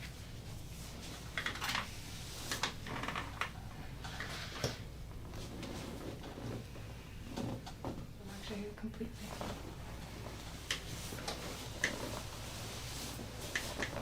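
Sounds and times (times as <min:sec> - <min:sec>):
low steady hum: 0:00.0 - 0:14.0
soft clicks and rustling: 0:09.2 - 0:12.4, 0:13.0 - 0:14.0.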